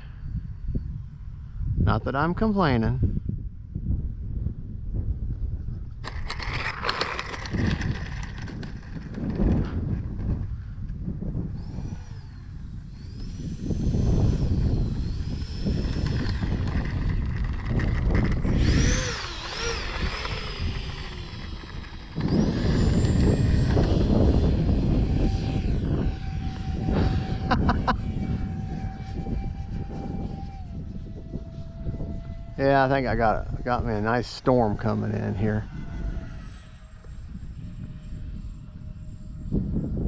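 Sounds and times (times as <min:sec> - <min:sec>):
electric ducted fans whining: 0:00.0 - 0:40.0
wind rumble on microphone: 0:00.0 - 0:40.0.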